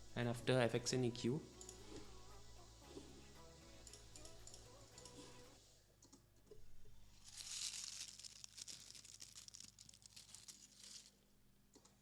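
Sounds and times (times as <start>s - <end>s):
scattered crackles: 7.2s - 11.2s.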